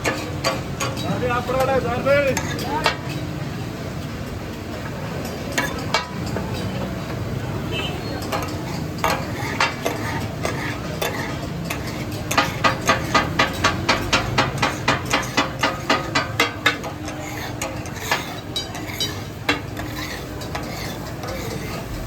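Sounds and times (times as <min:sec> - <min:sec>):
metal spatulas clanging on griddle: 0:00.0 - 0:03.4, 0:04.8 - 0:22.0
offal sizzling: 0:08.4 - 0:22.0.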